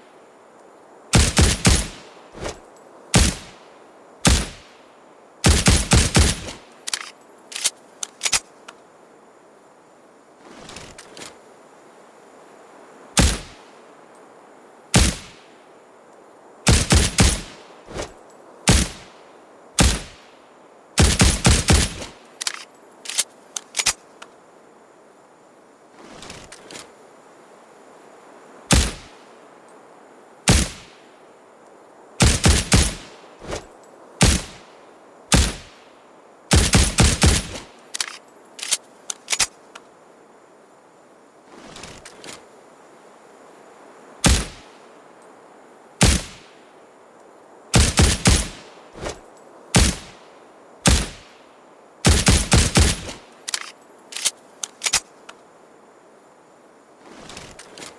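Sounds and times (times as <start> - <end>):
suppressed pistol shots: 4.2 - 4.6, 19.8 - 20.2, 44.2 - 44.6, 46.0 - 46.5, 49.8 - 50.2, 50.9 - 51.3.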